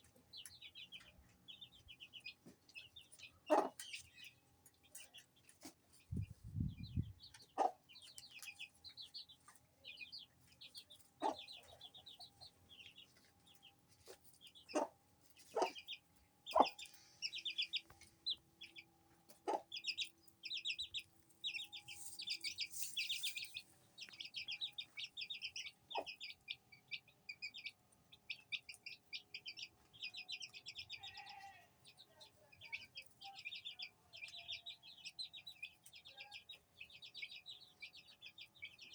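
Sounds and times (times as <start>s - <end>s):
chicks peeping: 0.0s - 38.9s
hen clucking: 3.3s - 4.0s, 6.2s - 8.0s, 11.0s - 12.4s, 14.1s - 26.6s.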